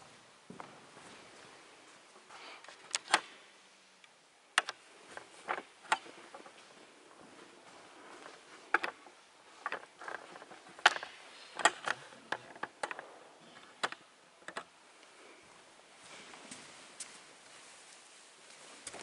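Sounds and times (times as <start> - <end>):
sharp clicks and light knocks: 4.0 - 6.8, 8.1 - 14.7.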